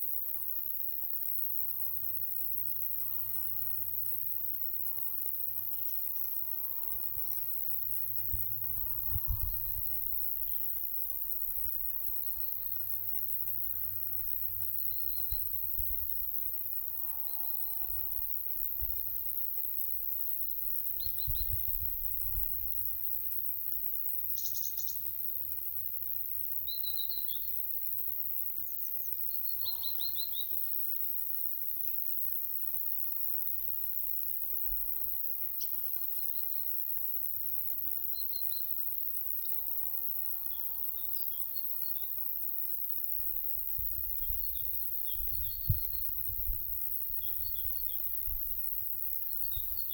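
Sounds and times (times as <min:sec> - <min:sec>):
constant high hiss: 0:00.0 - 0:49.9
wind buffeting microphone: 0:09.0 - 0:10.0
small birds chirping: 0:24.4 - 0:25.0, 0:26.7 - 0:27.5.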